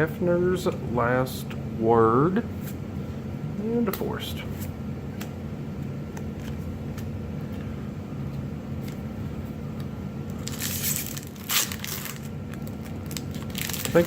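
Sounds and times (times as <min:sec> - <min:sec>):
low room hum: 0:00.0 - 0:14.0
foil wrapper crinkling and tearing: 0:10.4 - 0:14.0.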